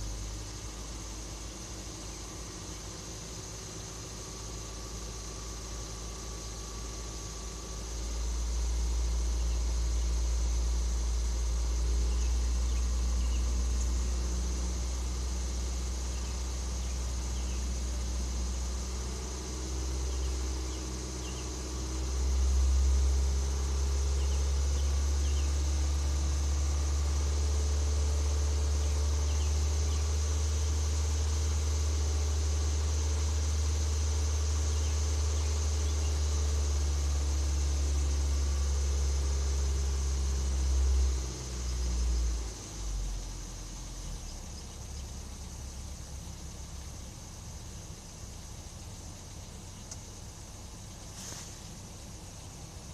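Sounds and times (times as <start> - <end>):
car engine running: 0.0 - 52.9
faint engine tapping: 40.8 - 52.9.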